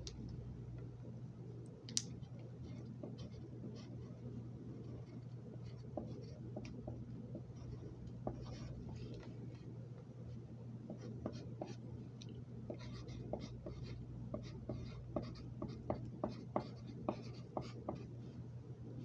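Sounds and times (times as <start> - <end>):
pencil scratching on paper: 2.7 - 9.1, 10.9 - 11.8, 12.7 - 18.1.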